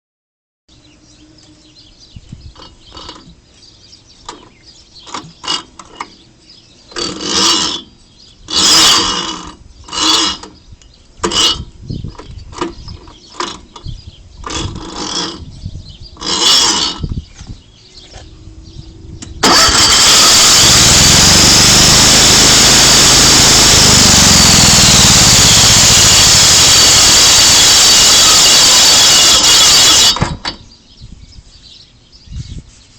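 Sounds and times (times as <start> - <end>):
engine clicks and clanks: 19.2 - 30.6
engine rattling bursts: 19.4 - 30.4.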